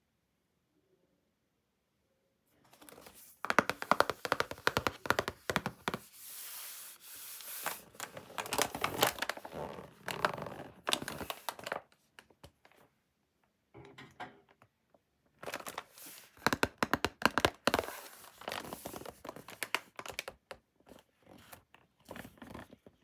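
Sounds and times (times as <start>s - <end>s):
packaging crinkling: 2.8s - 12.7s, 15.4s - 20.6s
packaging tearing: 7.4s - 12.0s, 15.4s - 20.4s.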